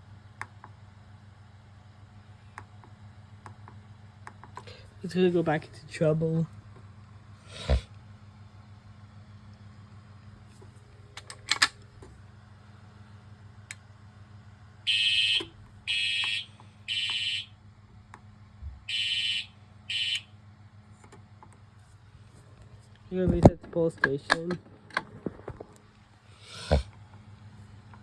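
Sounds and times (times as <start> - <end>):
low steady hum: 0.0 - 28.0
fire alarm horn blasts: 14.8 - 17.6, 18.9 - 20.3.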